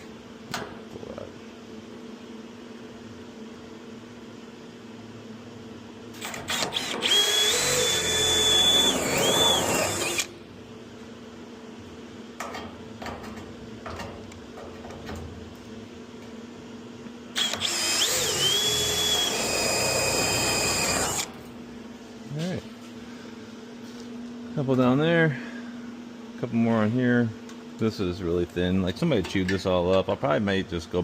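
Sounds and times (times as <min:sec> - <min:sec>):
power drill cutting sheet steel: 0:06.2 - 0:10.3, 0:17.4 - 0:21.3.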